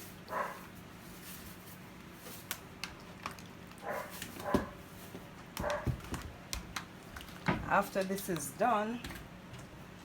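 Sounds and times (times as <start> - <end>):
dog barking: 0.3 - 0.6, 3.8 - 4.8, 5.6 - 6.0.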